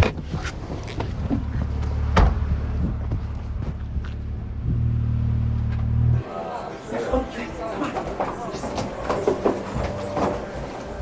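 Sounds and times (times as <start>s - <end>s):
thump: 2.1s - 2.5s.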